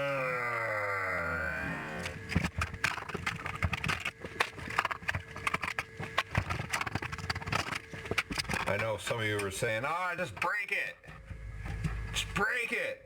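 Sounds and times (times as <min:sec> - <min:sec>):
faint steady hum: 0:00.0 - 0:13.0
hand tools clicking and scraping: 0:02.0 - 0:12.4.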